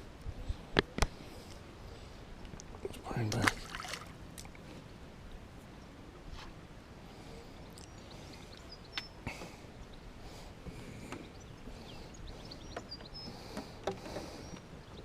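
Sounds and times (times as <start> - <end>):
outdoor background noise: 0.0 - 15.0
small birds chirping: 7.1 - 15.0.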